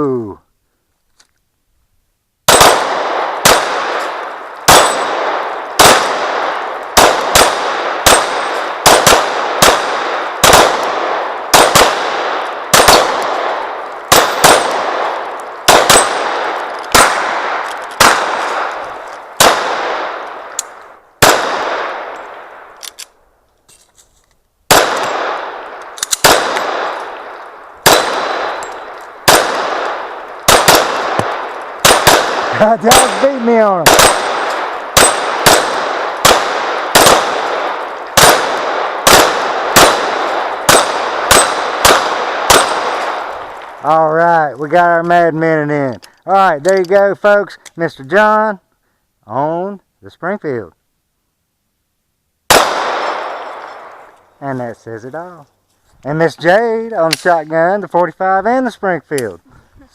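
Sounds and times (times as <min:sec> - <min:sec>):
pistol shots: 0:02.5 - 0:23.1, 0:24.7 - 0:43.7, 0:52.5 - 0:54.2.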